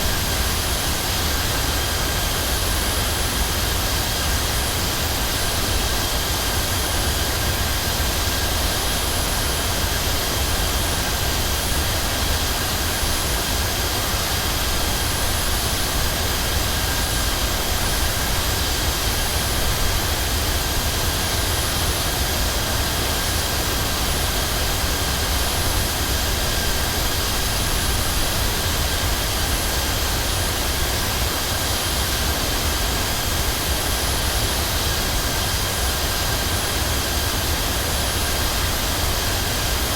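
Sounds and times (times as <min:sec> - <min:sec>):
jet airliner cabin engine noise: 0:00.0 - 0:39.9.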